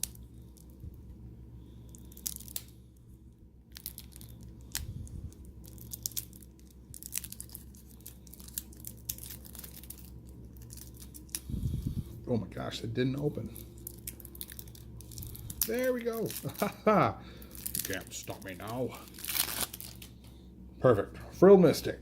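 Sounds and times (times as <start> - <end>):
plastic wrapper tearing and crinkling: 0.0 - 0.7, 1.9 - 2.8, 3.7 - 11.9, 13.5 - 20.2.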